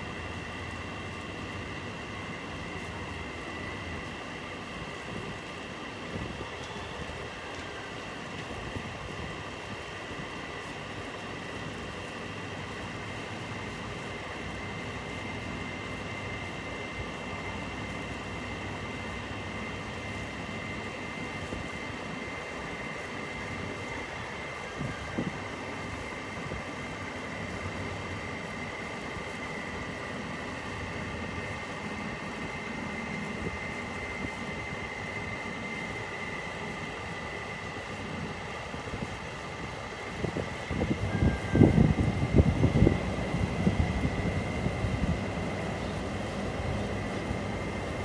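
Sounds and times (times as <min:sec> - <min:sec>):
outdoor background hum: 0:00.0 - 0:48.0
wind buffeting microphone: 0:40.1 - 0:48.0
faint high steady tones: 0:40.7 - 0:48.0.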